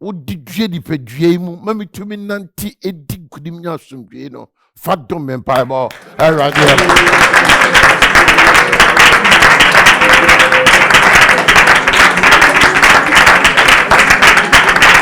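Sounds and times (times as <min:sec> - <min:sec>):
congregation clapping: 0:05.6 - 0:15.0
music: 0:06.5 - 0:15.0.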